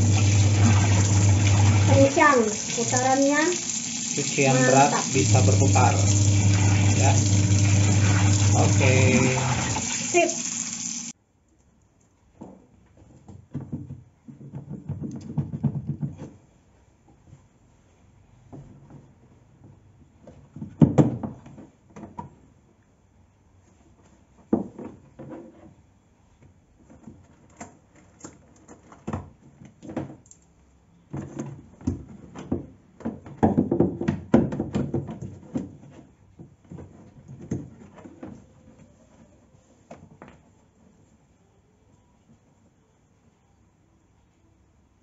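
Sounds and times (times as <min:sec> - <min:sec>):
objects knocking and clattering: 0:13.2 - 0:16.3.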